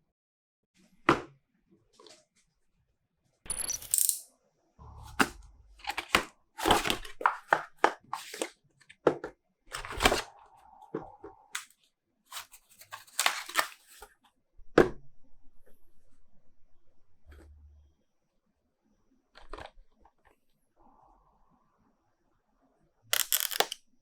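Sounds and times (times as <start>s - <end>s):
packaging clicking crinkling and tearing: 12.7s - 14.0s, 23.2s - 23.8s.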